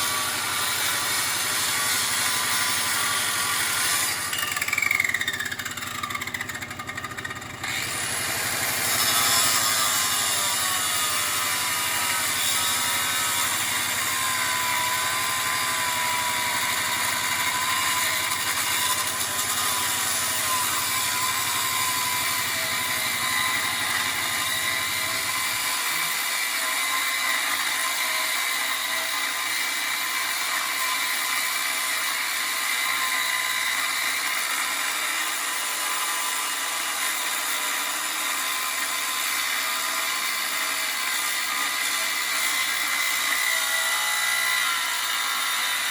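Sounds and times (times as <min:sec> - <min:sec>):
power tool hissing: 0:00.0 - 0:26.5.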